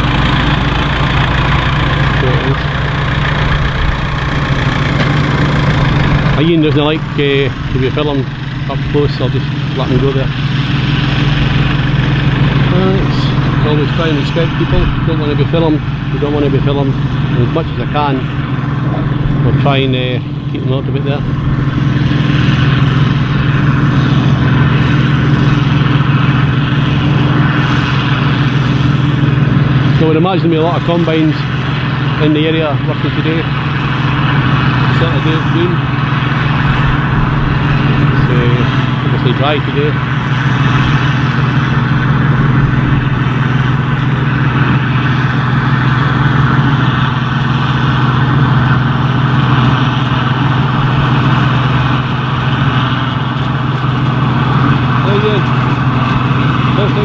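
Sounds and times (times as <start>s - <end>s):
threshing machinery rushing: 0.0s - 20.1s, 33.0s - 57.0s
combine harvester engine hum: 0.0s - 57.0s.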